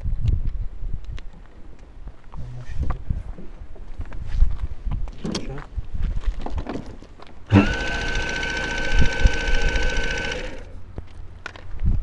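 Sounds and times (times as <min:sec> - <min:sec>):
model plane motor whirring: 0:07.5 - 0:10.8.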